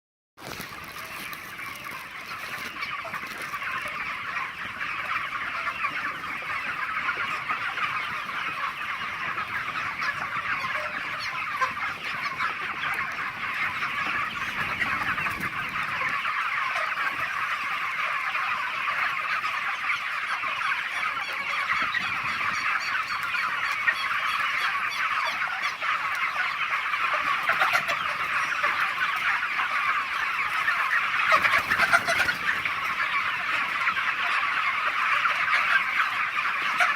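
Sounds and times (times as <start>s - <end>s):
flock of chickens clucking: 0.4s - 36.9s.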